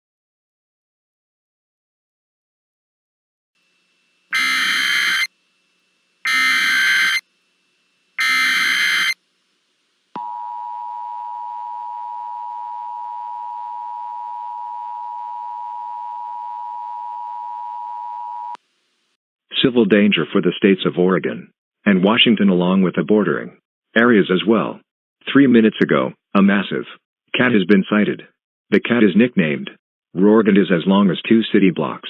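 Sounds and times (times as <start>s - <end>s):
data bursts: 4.3s - 5.3s, 6.2s - 7.2s, 8.2s - 9.2s
two-tone attention signal: 4.3s - 5.3s, 6.3s - 7.2s, 8.2s - 9.2s.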